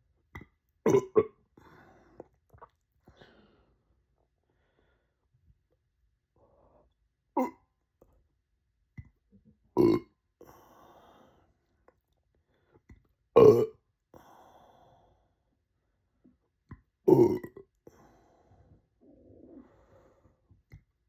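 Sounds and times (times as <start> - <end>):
person burping: 0.8 - 1.4, 7.4 - 7.6, 9.8 - 10.1, 13.4 - 13.8, 17.1 - 17.7
faint breathing: 10.4 - 11.6, 14.2 - 15.4, 17.8 - 20.6.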